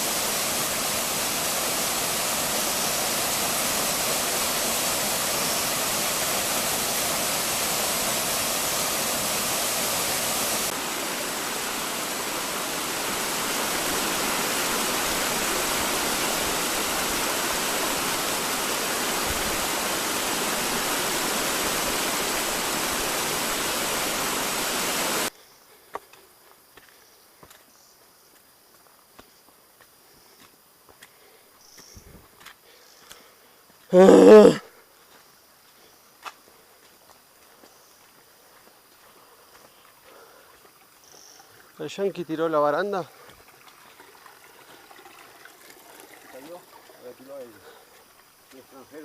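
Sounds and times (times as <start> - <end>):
waterfall rushing: 0.0 - 25.3.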